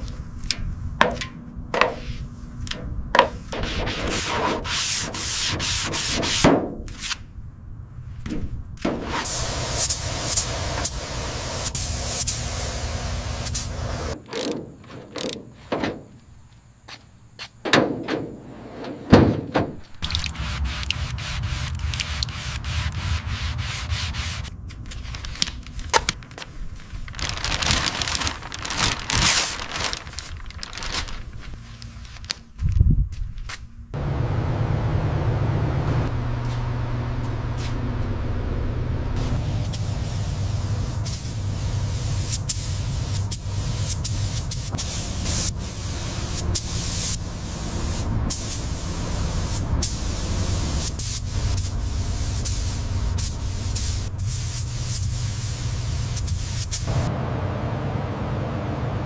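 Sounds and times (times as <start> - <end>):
steady rubbing noise: 3.5 - 6.4, 18.4 - 32.2
steady hissing: 9.3 - 16.8, 39.2 - 57.1.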